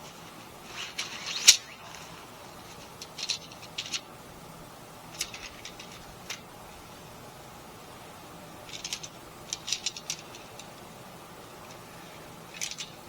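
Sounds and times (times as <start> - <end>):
tent gear rustling: 0.0 - 4.2.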